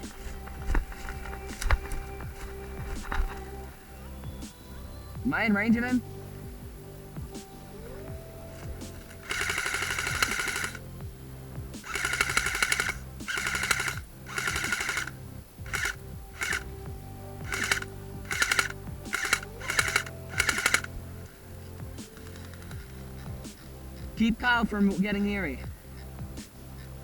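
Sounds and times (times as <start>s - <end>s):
background music: 0.0s - 27.0s
airsoft gun firing bursts: 8.6s - 10.8s, 11.8s - 16.7s, 17.5s - 21.0s.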